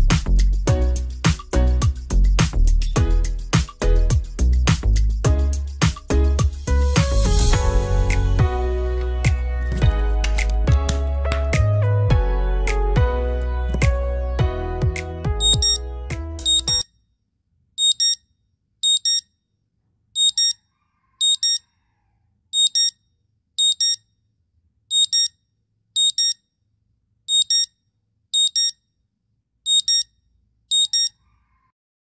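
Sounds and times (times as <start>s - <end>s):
melodic phone tune with bass: 5.3s - 16.8s
phone alarm beeps: 15.4s - 15.8s, 16.4s - 16.8s, 17.8s - 18.2s, 18.8s - 19.3s, 20.2s - 20.6s, 21.2s - 21.6s, 22.6s - 23.0s, 23.6s - 24.0s, 24.9s - 25.4s, 26.0s - 26.4s, 27.3s - 27.7s, 28.4s - 28.8s, 29.7s - 30.1s, 30.7s - 31.2s.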